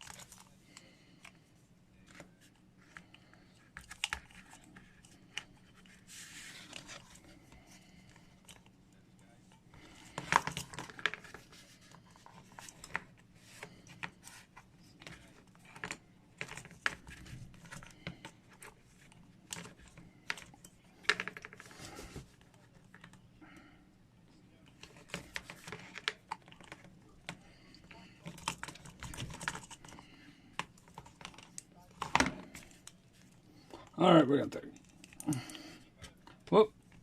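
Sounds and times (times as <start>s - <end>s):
plastic parts clicking and scraping: 0.0s - 1.4s, 2.0s - 8.8s, 9.4s - 23.2s, 24.6s - 37.0s.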